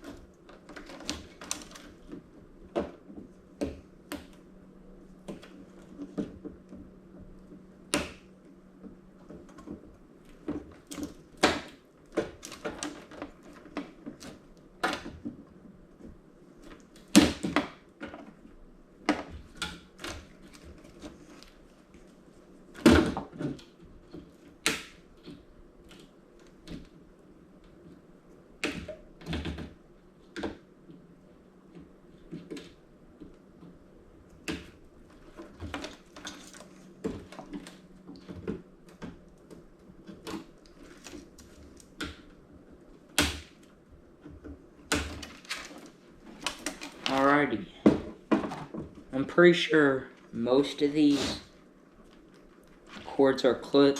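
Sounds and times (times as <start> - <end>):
faint low hum: 0.0 - 53.9.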